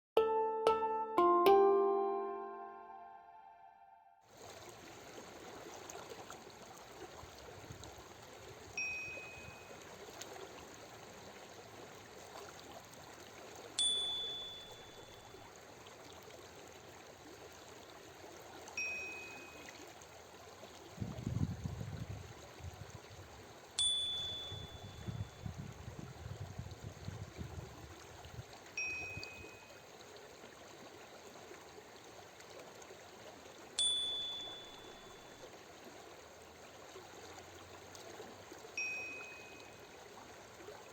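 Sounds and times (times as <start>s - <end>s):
soft two-note chime: 0.2s - 4.2s, 8.8s - 9.7s, 13.8s - 15.4s, 18.8s - 19.7s, 23.8s - 25.6s, 28.8s - 29.8s, 33.8s - 35.5s, 38.8s - 39.8s
running water: 4.4s - 40.9s.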